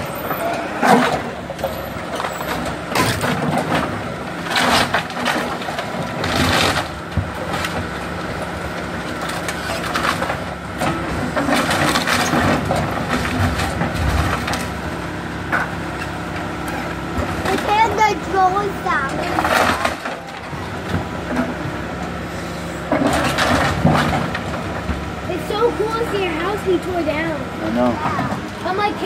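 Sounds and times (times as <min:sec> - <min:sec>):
backhoe engine running: 0:00.0 - 0:29.0
timber breaking and crushing: 0:19.0 - 0:21.6.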